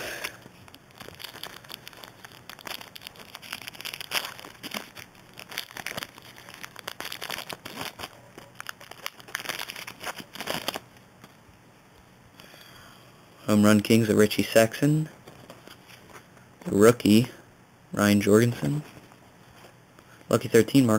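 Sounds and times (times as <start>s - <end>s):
foil wrappers crinkling and tearing: 0.1s - 11.4s.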